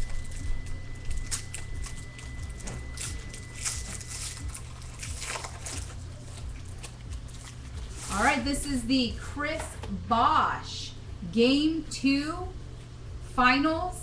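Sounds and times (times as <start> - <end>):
wrapper crinkling and rustling: 0.0 - 8.8
low steady hum: 0.0 - 14.0.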